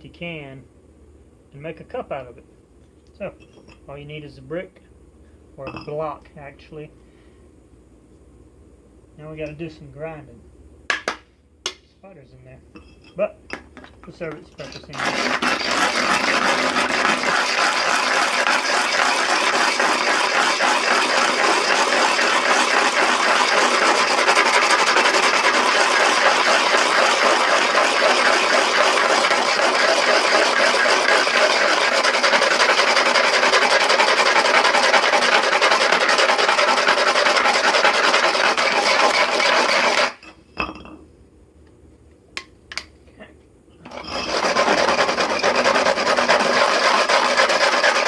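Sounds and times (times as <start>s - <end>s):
metal can grinding against block: 14.6s - 40.2s, 43.9s - 48.0s.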